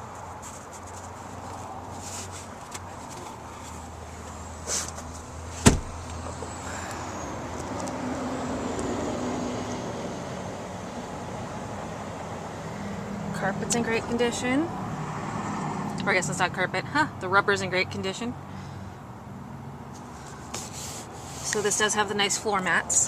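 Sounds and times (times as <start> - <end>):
light rustles and taps: 0.1 - 6.2.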